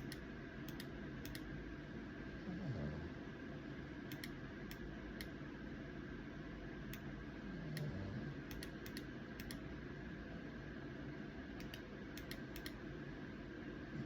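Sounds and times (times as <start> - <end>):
light irregular clicks: 0.0 - 1.5, 4.1 - 5.4, 8.5 - 9.6, 11.6 - 12.8.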